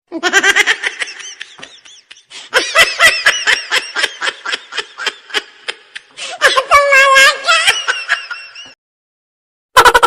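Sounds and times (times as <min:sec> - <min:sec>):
high-pitched giggling laughter: 0:09.8 - 0:10.0.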